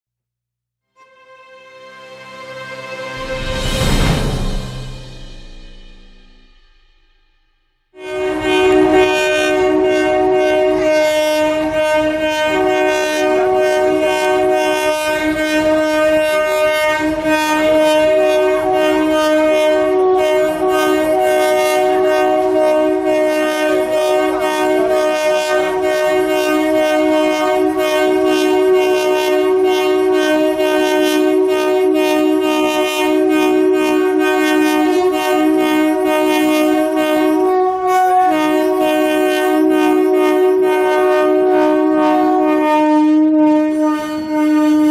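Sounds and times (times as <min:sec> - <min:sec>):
locomotive horn multi-note chord: 0:00.9 - 0:06.7, 0:08.0 - 0:44.9
train running noise: 0:02.0 - 0:06.6, 0:08.0 - 0:44.9.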